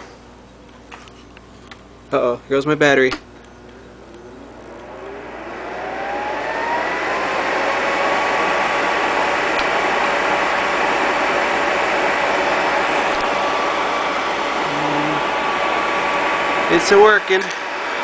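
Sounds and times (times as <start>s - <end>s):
rush of blown air: 3.9s - 16.7s
hair dryer motor whine: 3.9s - 18.0s.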